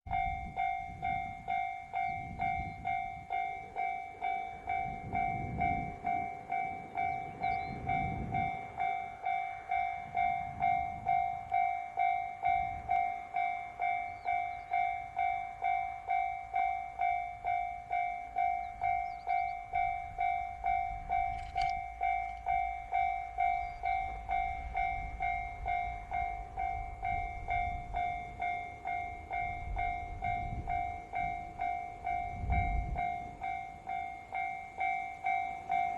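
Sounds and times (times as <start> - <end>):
railroad crossing alarm ringing: 0.0 - 35.9
train rumble: 0.1 - 35.9.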